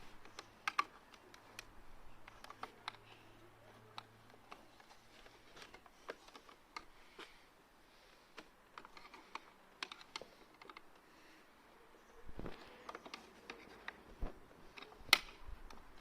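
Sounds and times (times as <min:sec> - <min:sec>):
small plastic parts clicking: 0:00.1 - 0:07.3, 0:08.3 - 0:11.1, 0:12.5 - 0:16.0.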